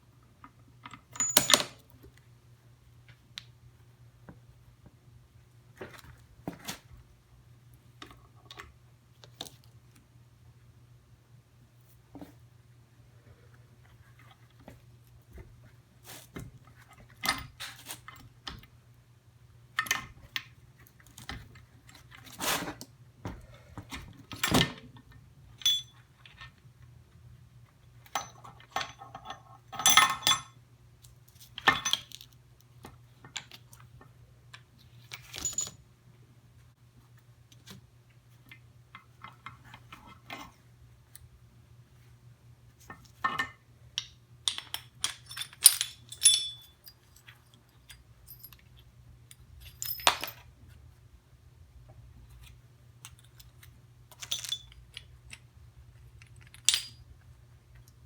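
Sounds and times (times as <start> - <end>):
metal gears clinking: 44.5 - 47.0.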